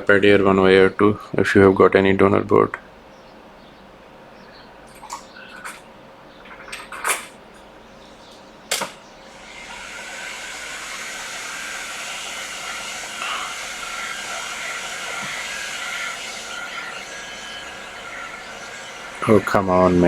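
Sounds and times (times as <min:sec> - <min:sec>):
hot air station hissing: 0:08.0 - 0:20.0.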